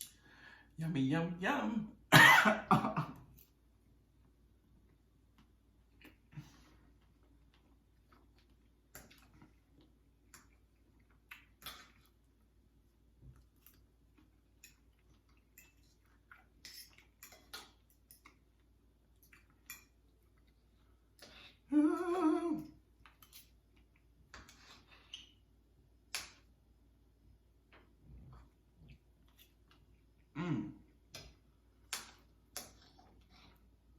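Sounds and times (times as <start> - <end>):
chewing and mouth sounds: 4.8 - 12.5, 13.3 - 21.7, 27.7 - 33.9
person humming mmm: 21.7 - 22.8, 30.4 - 30.8.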